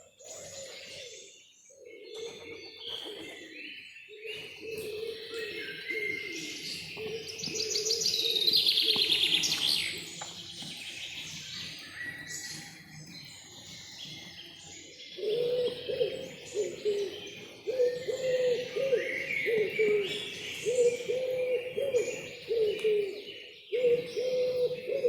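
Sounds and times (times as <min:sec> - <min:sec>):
small birds chirping and trilling: 0:00.0 - 0:25.0
bird low hooting calls: 0:15.2 - 0:25.0.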